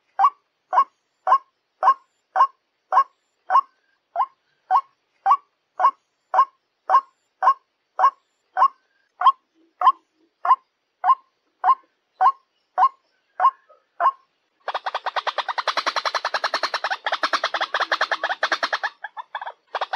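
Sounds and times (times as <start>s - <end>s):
waterhen calling: 0.0s - 19.9s.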